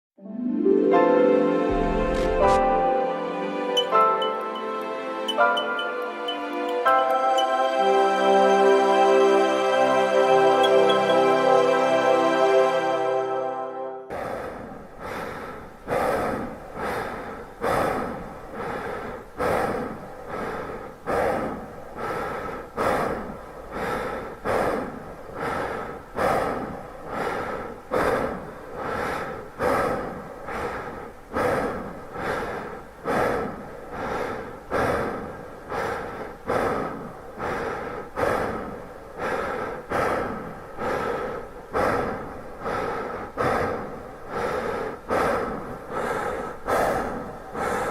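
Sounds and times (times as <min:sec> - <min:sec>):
person gasping for breath: 0:14.1 - 0:47.9.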